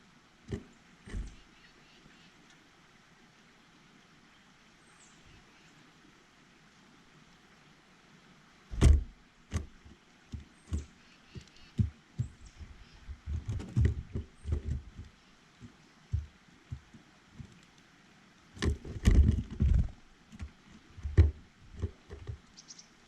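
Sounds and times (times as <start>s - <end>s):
irregular knocks and thumps: 0.5s - 1.5s, 8.7s - 17.6s, 18.6s - 22.5s.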